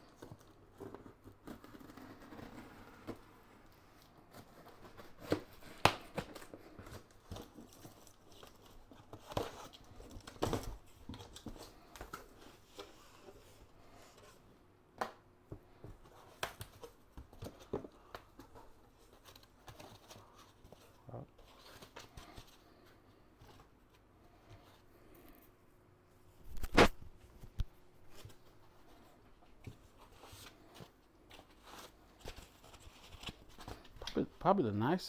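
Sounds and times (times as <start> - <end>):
packaging rustling and crinkling: 0.0 - 14.4, 26.5 - 34.4.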